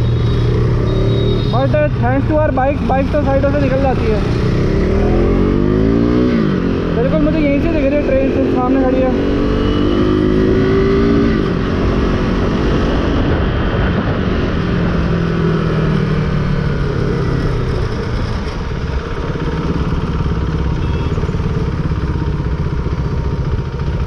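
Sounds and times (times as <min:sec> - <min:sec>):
motorcycle engine running: 0:15.2 - 0:24.0.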